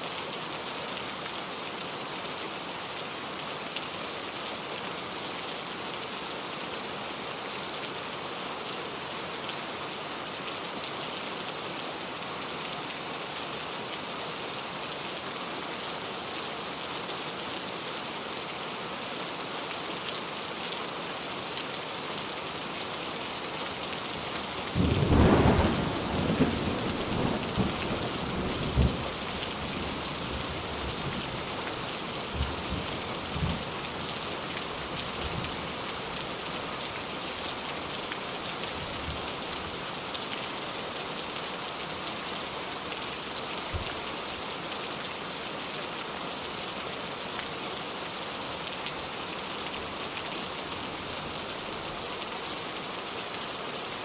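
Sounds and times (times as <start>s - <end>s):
rain hissing: 23.7s - 38.5s.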